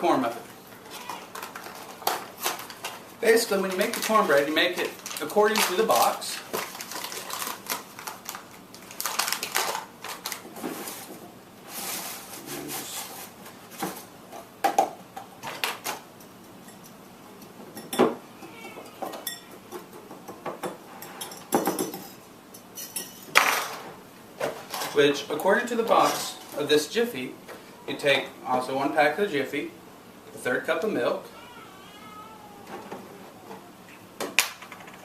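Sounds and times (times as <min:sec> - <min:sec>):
bowls and utensils clinking: 0:17.7 - 0:23.4.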